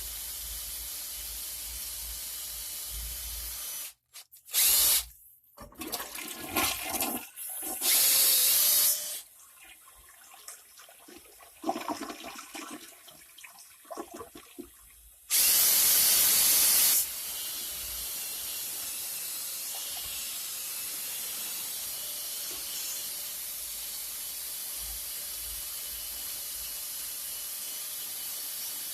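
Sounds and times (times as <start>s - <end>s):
toilet flushing: 5.6s - 8.0s, 9.4s - 14.9s
toilet tank refilling hiss: 5.6s - 8.1s, 9.6s - 23.1s.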